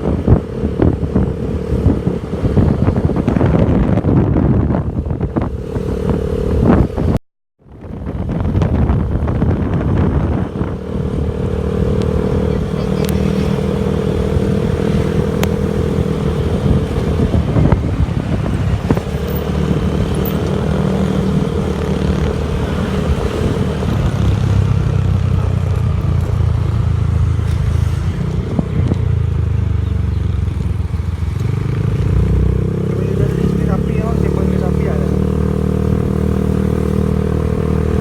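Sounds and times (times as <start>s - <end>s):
vehicle engine running: 8.2s - 38.0s.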